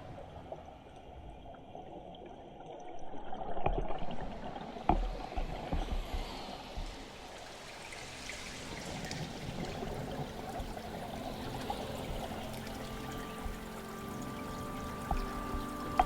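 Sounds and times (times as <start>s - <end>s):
underwater bubbling: 0.0s - 16.0s
faint steady tones: 6.5s - 16.0s.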